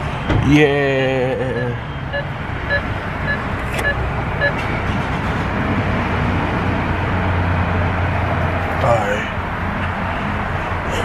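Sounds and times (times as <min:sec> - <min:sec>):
motor vehicle humming: 0:00.0 - 0:11.0
short high beeps: 0:01.6 - 0:04.6.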